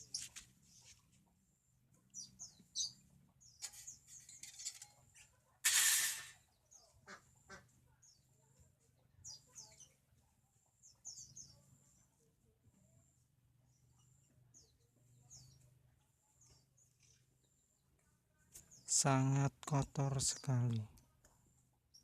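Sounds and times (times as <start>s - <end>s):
birds chirping: 0.0s - 5.4s, 6.3s - 22.0s.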